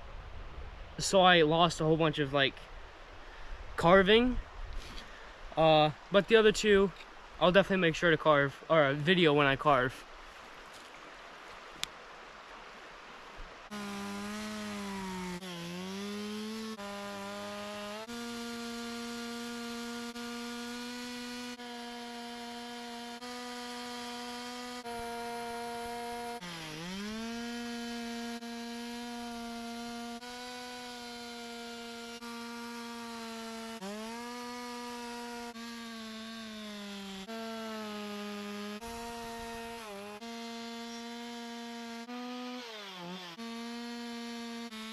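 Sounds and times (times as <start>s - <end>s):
chainsaw carving wood: 13.7s - 44.9s.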